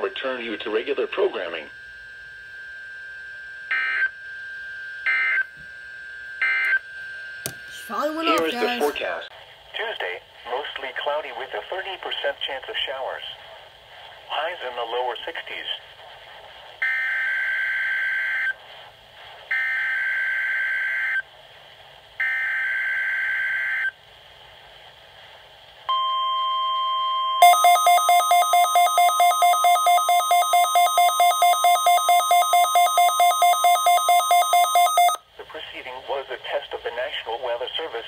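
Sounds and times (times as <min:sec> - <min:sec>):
steady warning alarm tone: 0:00.3 - 0:09.0, 0:27.4 - 0:35.2
rapid alarm beeping: 0:27.4 - 0:35.2.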